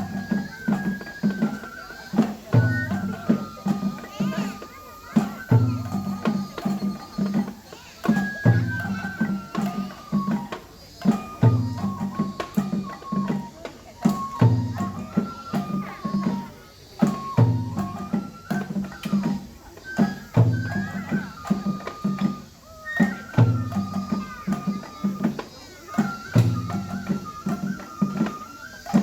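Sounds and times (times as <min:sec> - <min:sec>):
high flute melody: 0:00.0 - 0:29.0
taiko drum pattern: 0:00.0 - 0:29.0.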